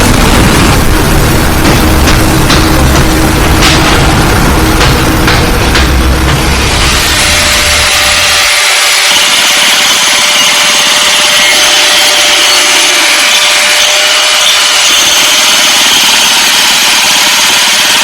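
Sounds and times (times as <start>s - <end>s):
machine grinding hiss: 0.0s - 18.0s.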